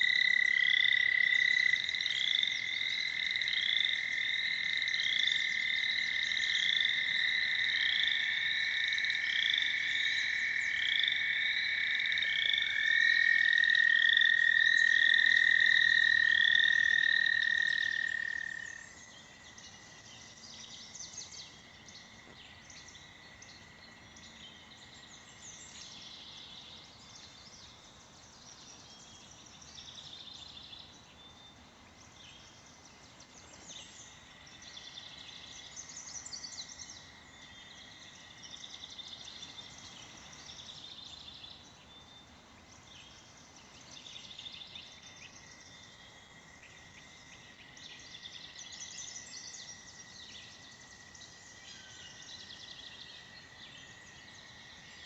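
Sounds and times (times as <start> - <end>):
higher repeating frog call: 0.0 - 18.9
toads trilling: 0.0 - 19.0.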